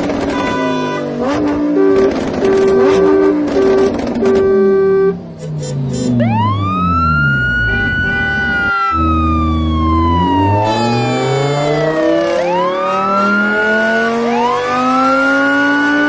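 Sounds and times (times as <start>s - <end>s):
siren wail: 1.8s - 16.0s
low descending tones: 6.1s - 16.0s.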